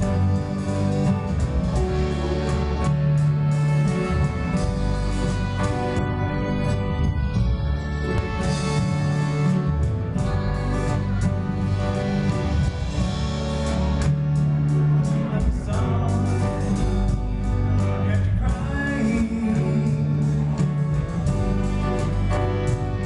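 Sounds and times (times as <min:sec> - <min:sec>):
live band playing: 0:00.0 - 0:23.0
person singing: 0:14.8 - 0:21.2.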